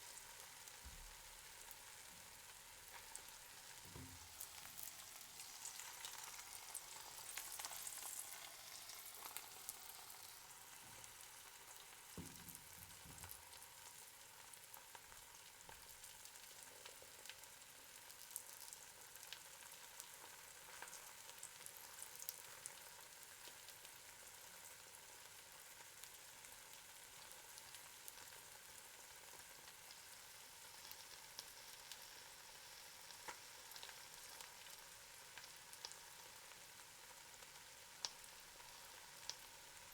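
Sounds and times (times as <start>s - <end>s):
eggs sizzling in a pan: 0.0s - 39.9s
small pops and crackles: 12.1s - 13.6s.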